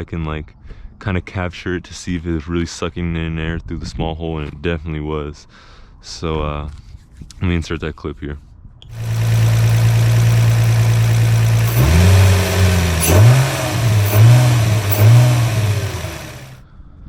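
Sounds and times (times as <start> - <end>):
car engine idling and revving: 8.9 - 16.6.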